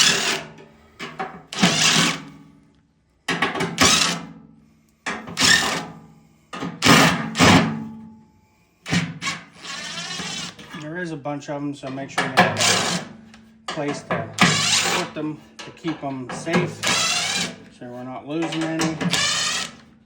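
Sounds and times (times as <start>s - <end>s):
impact driver bursts: 1.5s - 2.3s, 3.4s - 4.3s, 5.3s - 6.0s, 6.6s - 7.8s, 8.9s - 10.8s, 12.5s - 13.2s, 14.4s - 15.2s, 16.7s - 17.6s, 18.5s - 19.9s.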